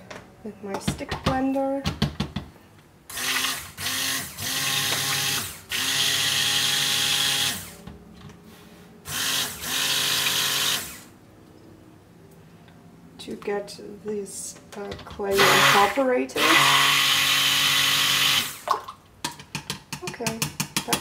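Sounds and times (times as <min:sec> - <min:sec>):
stick blender running: 0:03.1 - 0:07.7, 0:09.1 - 0:11.1, 0:15.3 - 0:18.6.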